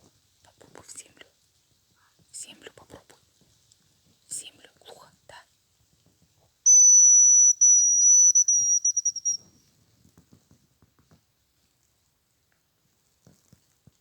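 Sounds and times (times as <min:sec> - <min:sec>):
high thin whistle with trill: 0:06.7 - 0:09.5.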